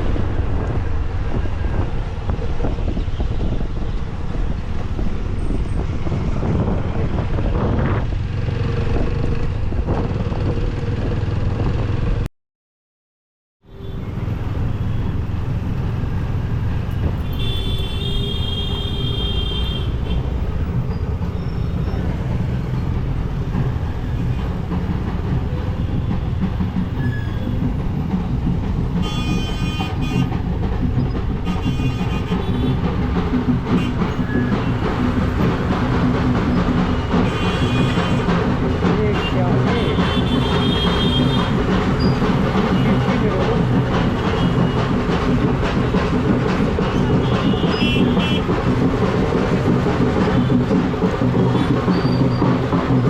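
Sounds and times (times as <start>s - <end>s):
motorcycle engine road and wind rumble: 0.0s - 12.3s, 13.8s - 53.0s
vehicle horn honking: 17.2s - 20.2s, 29.0s - 30.3s, 37.2s - 38.3s, 39.7s - 41.5s.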